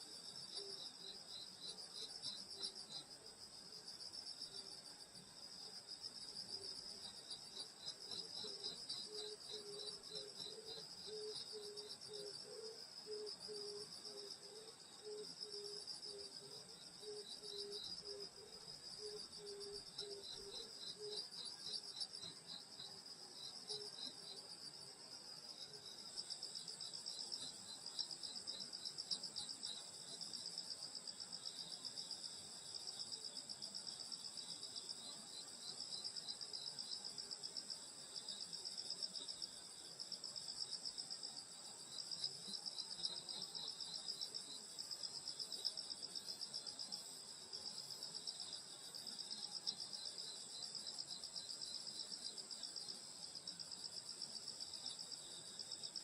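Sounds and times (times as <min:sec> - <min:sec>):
low pulsed insect call: 0:00.0 - 0:56.0
crickets trilling: 0:05.4 - 0:24.8.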